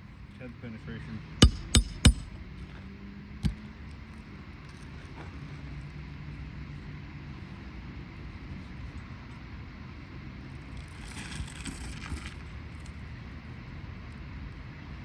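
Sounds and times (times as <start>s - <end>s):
hammer striking nail: 1.4s - 2.4s.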